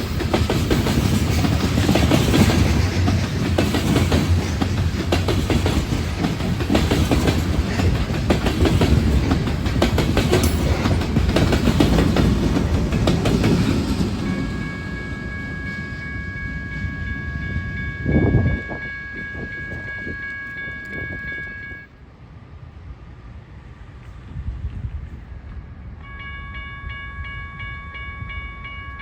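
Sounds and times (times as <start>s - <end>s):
train wheels clattering: 0.0s - 21.6s
low train rumble: 0.0s - 29.0s.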